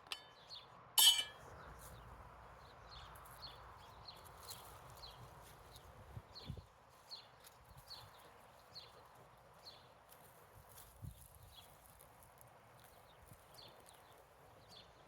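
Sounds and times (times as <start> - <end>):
outdoor background noise: 0.0 - 15.0
metallic clank: 1.0 - 1.4.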